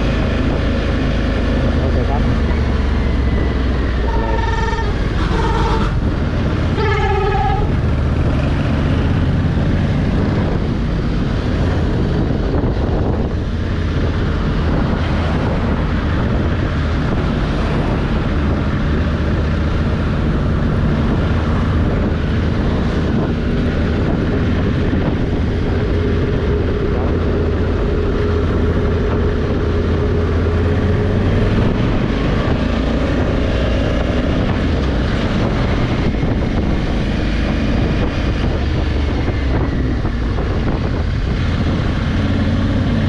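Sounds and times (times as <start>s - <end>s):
wind and road noise: 0.0s - 43.0s
vehicle horn: 4.0s - 6.0s, 6.7s - 7.7s.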